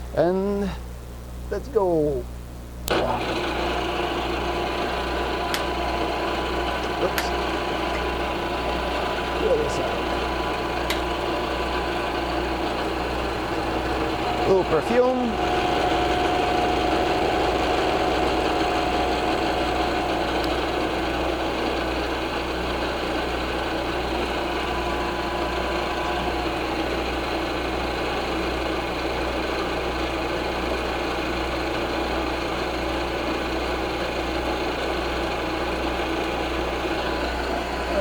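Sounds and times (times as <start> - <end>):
thin whine: 2.8 - 29.2
milling machine cutting metal: 2.9 - 38.0.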